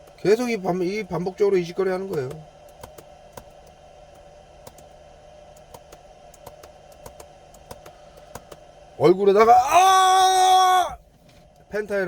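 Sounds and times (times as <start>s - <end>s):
faint steady hum: 0.0s - 12.0s
keyboard typing clicks: 2.0s - 8.6s.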